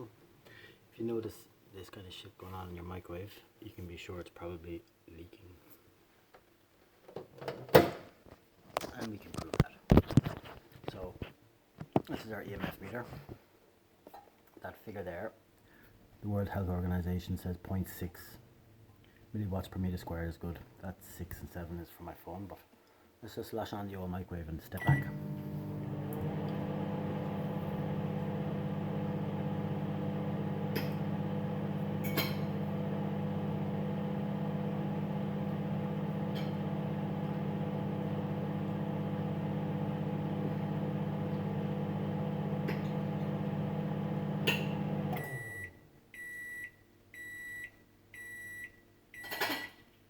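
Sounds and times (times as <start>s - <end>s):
microwave oven humming: 24.8s - 45.7s.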